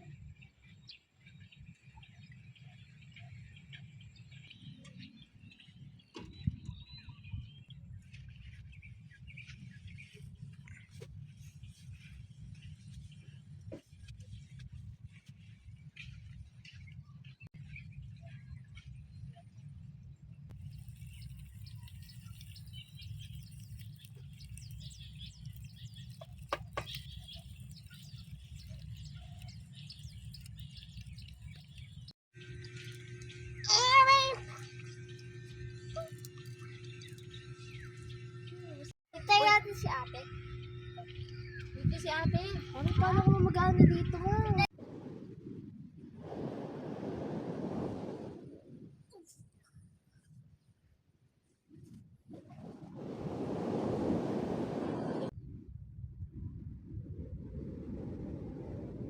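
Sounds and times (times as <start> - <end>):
small birds chirping: 0.0 - 14.6, 20.6 - 43.1
low steady rumble: 19.7 - 46.1.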